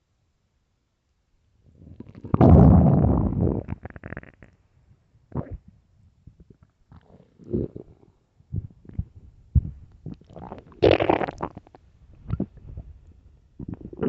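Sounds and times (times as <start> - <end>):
stomach growling and gurgling: 1.8 - 4.5, 5.3 - 13.0, 13.6 - 14.0.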